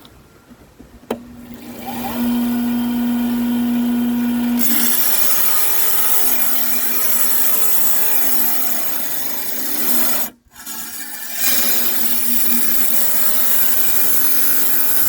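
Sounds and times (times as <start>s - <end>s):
tile saw motor humming: 1.1s - 15.0s
saw blade grinding stone: 4.6s - 15.0s.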